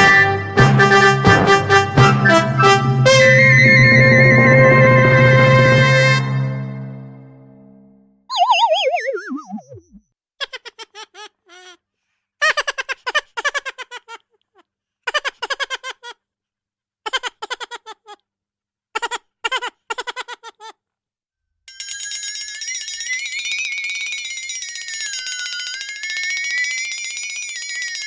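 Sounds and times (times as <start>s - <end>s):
high-pitched giggling laughter: 10.4s - 11.8s, 12.4s - 14.3s, 15.1s - 16.2s, 17.1s - 18.2s, 19.0s - 20.8s.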